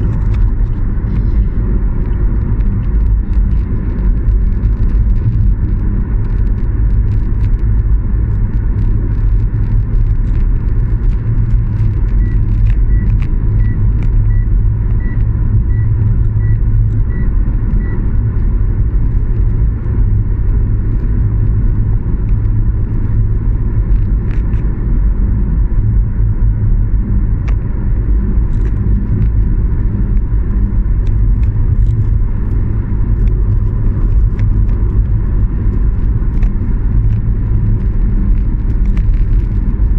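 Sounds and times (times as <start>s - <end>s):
train rumbling: 0.0s - 4.6s.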